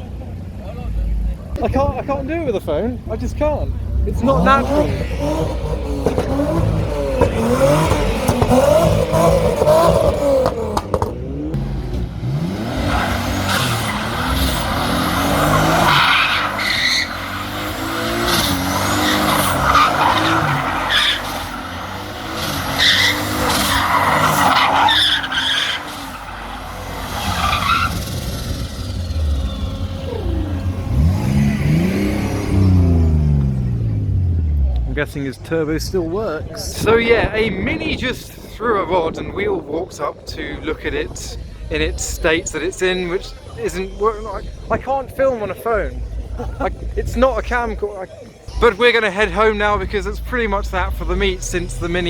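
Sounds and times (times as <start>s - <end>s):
car engine revving: 0.0s - 52.0s
tyre screech: 12.5s - 33.1s.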